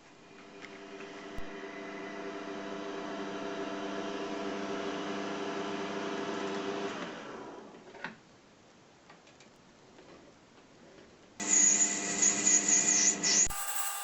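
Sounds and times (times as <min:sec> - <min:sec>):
high-pitched power tool whine: 0:11.4 - 0:14.0.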